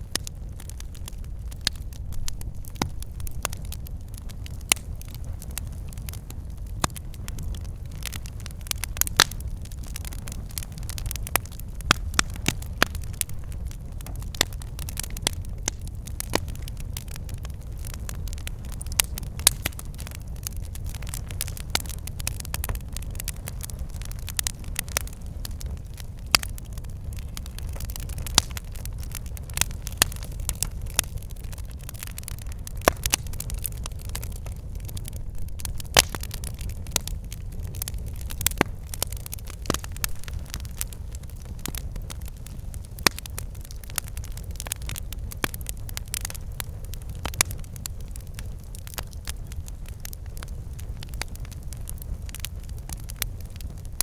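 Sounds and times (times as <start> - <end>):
low rumble of flames: 0.0 - 54.0
wood crackling and popping: 0.0 - 54.0.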